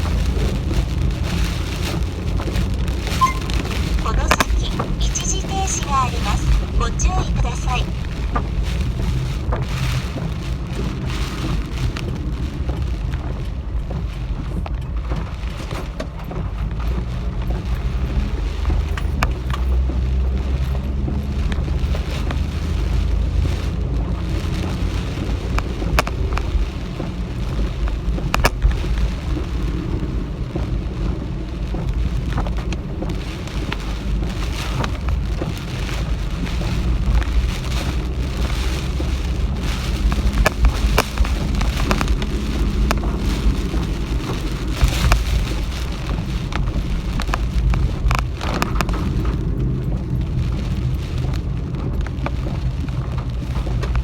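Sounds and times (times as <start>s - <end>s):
heavy rain hissing: 0.0s - 10.0s
rain drops hitting: 0.0s - 54.0s
low rumble: 5.8s - 54.0s.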